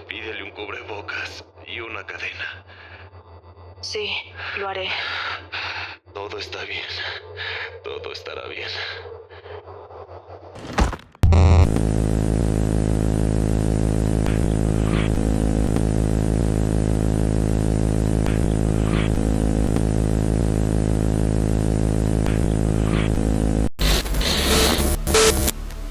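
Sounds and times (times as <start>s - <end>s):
electronic buzzing drone: 10.6s - 25.7s.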